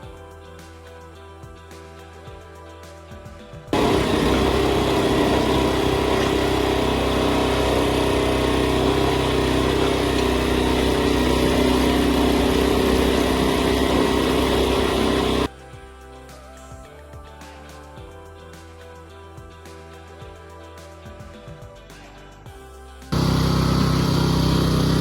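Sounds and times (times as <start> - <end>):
small gasoline engine running: 3.7 - 15.5, 23.1 - 25.0.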